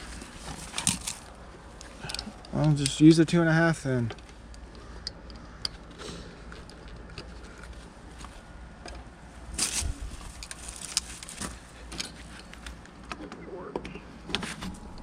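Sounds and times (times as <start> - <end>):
steady low hum: 0.0 - 15.0
rustle or scrape: 9.5 - 12.6.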